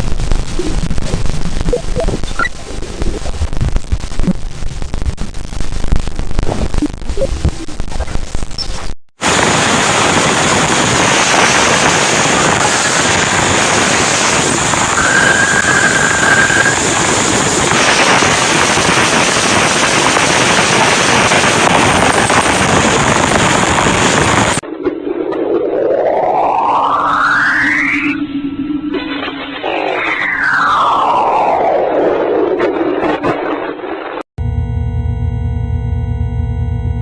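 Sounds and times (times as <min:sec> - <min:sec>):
crackling static hiss: 0:00.0 - 0:15.1.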